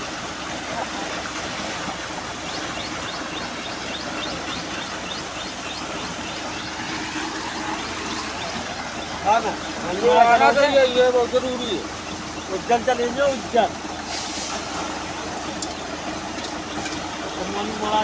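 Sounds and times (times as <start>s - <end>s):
compressed air and water rushing: 11.8s - 17.2s.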